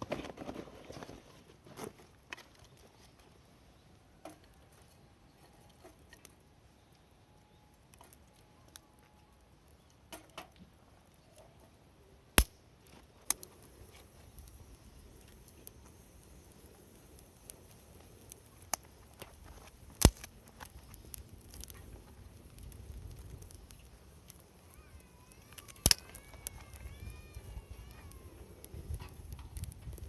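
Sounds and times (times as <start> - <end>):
small objects clicking and knocking: 25.3 - 30.0.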